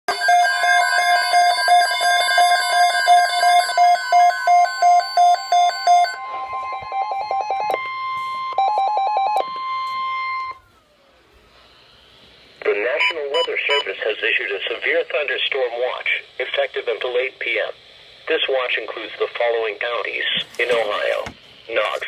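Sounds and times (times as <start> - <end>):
electronic alarm beeping: 0.1 - 10.7, 12.9 - 14.0
steady warning tone: 0.1 - 21.2.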